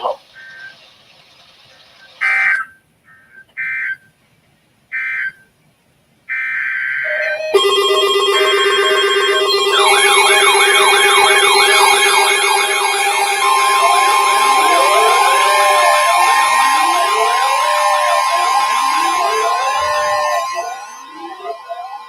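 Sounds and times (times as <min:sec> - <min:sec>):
siren-like wail: 0:07.0 - 0:22.0
steady alert tones: 0:07.6 - 0:22.0
warbling digital data bursts: 0:07.6 - 0:22.0.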